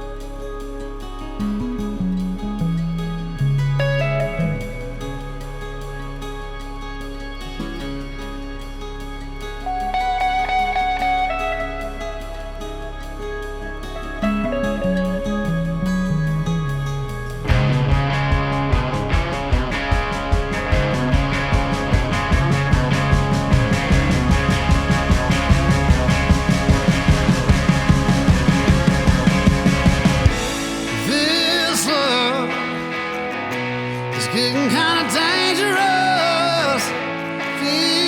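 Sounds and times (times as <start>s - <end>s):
rock music: 0.0s - 38.0s
drum beat: 17.5s - 32.1s
person singing: 30.8s - 33.3s, 34.0s - 38.0s.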